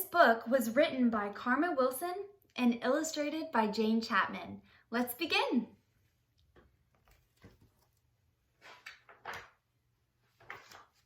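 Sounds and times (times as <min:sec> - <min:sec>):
soft knocks of book handled: 0:06.5 - 0:08.0
book pages rustling: 0:06.8 - 0:11.0.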